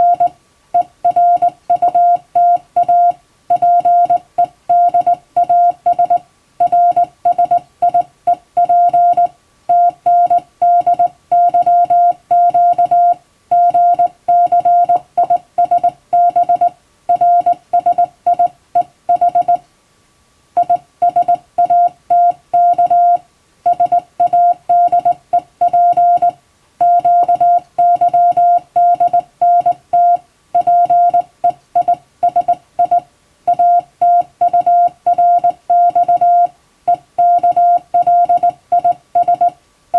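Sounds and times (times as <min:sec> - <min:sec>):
morse code tone: 0:00.0 - 0:19.6, 0:20.6 - 0:39.6.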